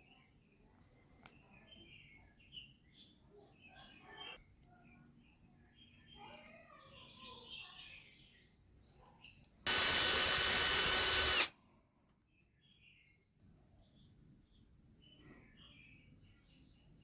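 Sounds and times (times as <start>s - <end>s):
handheld power drill running: 9.7s - 11.5s.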